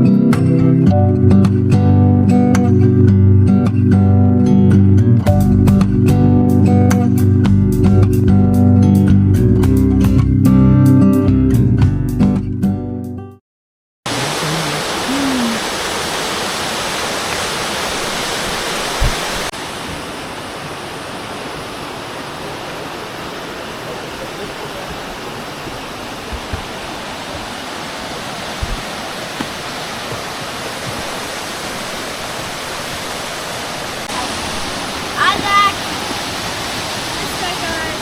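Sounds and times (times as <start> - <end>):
waterfall rushing: 14.1 - 38.0.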